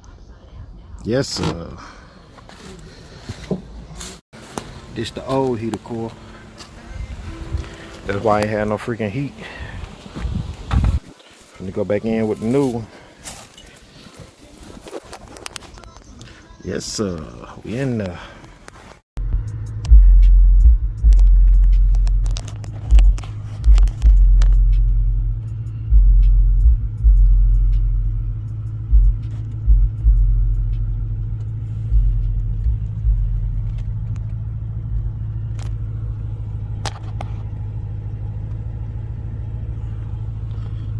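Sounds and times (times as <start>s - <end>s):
car engine running: 4.4s - 10.9s, 19.2s - 40.9s
heavy low thuds: 19.2s - 40.9s.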